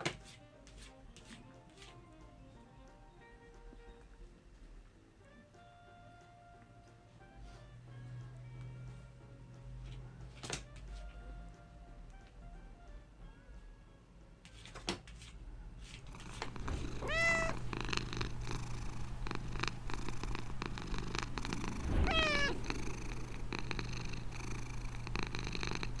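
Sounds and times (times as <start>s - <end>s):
low hum: 16.1s - 25.1s
cat meowing: 16.6s - 17.7s, 21.9s - 22.7s.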